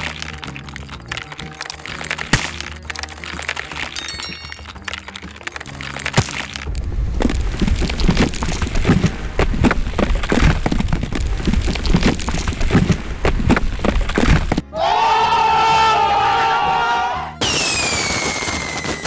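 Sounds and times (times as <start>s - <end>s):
cracking and crashing impacts: 0.0s - 14.6s
low rumble: 6.7s - 14.6s.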